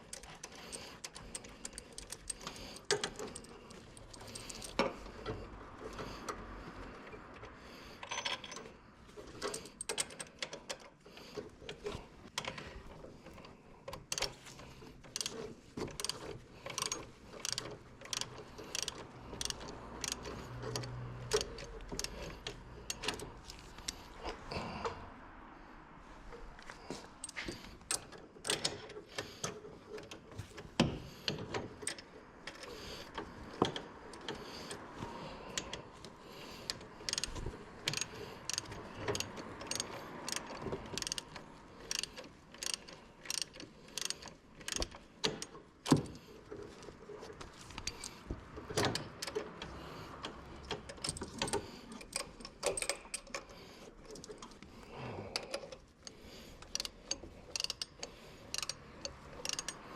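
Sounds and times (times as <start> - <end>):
metal tools clinking: 0.0 - 5.4, 8.0 - 10.5
ratchet wrench clicking: 0.0 - 6.4, 14.0 - 24.2, 35.5 - 46.2, 55.4 - 59.9.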